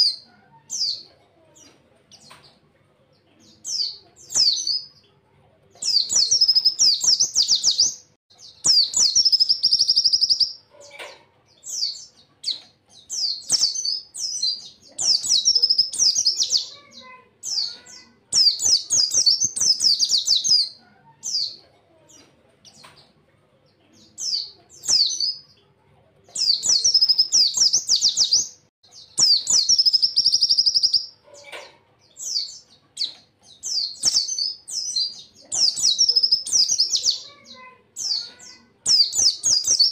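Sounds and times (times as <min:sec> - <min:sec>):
buzzy bird trill: 0:26.3 - 0:31.2.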